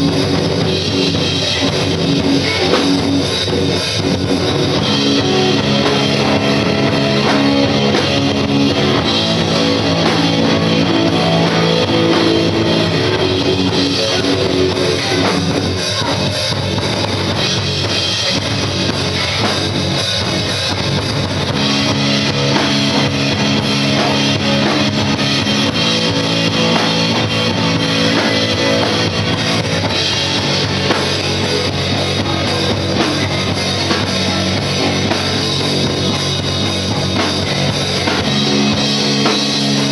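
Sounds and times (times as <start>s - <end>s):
rock band playing live: 0.0s - 39.9s.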